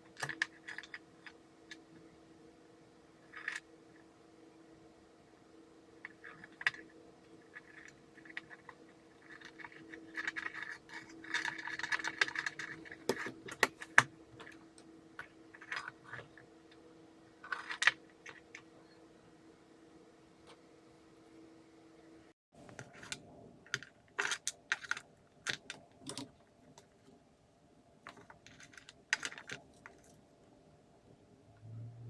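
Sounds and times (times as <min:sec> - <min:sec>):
small parts clicking and scraping: 0:00.0 - 0:02.0, 0:03.2 - 0:03.7, 0:06.0 - 0:16.4, 0:17.4 - 0:18.8, 0:22.6 - 0:27.2, 0:28.0 - 0:30.3.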